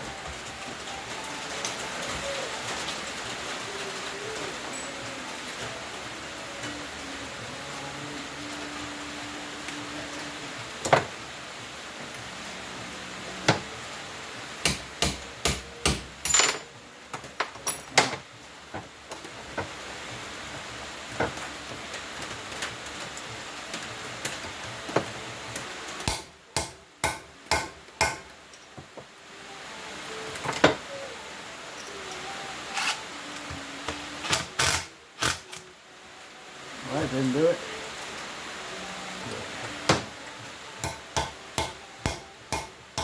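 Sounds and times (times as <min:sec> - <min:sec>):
hammer striking metal: 0:14.6 - 0:16.6, 0:26.1 - 0:28.3, 0:40.8 - 0:42.8.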